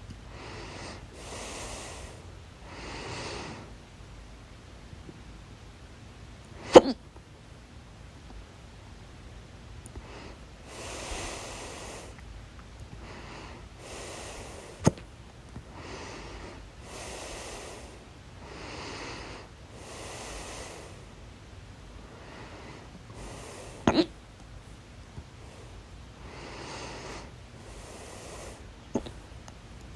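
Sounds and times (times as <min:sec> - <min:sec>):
person breathing heavily: 0:00.3 - 0:03.8, 0:10.0 - 0:12.2, 0:13.0 - 0:15.0, 0:15.6 - 0:21.2, 0:22.0 - 0:24.0, 0:25.4 - 0:29.3
person hiccuping: 0:06.6 - 0:07.0, 0:23.9 - 0:24.2.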